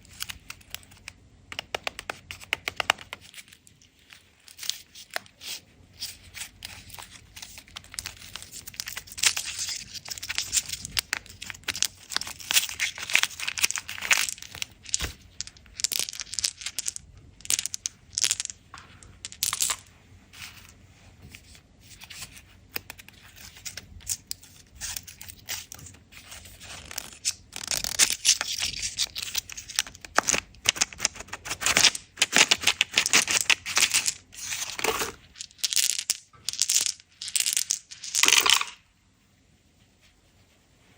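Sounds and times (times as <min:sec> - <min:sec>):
candy wrappers crinkling: 0:03.2 - 0:20.7, 0:23.3 - 0:38.8.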